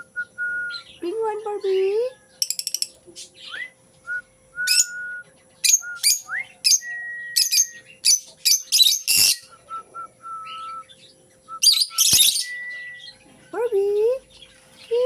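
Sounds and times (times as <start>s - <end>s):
whistled bird notes: 0.0s - 1.1s, 3.4s - 13.3s
bird chirping: 0.0s - 15.0s.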